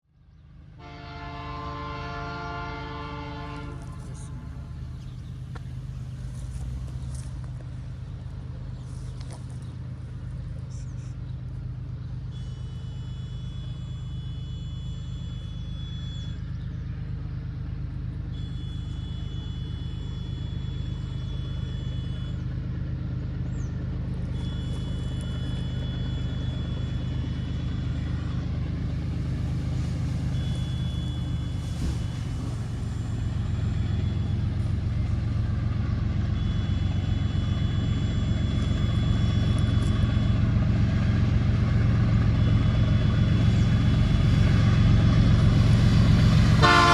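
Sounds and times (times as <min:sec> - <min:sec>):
diesel locomotive engines rumbling: 0:00.0 - 0:46.9
faint high steady tone: 0:12.3 - 0:16.7, 0:18.3 - 0:22.4.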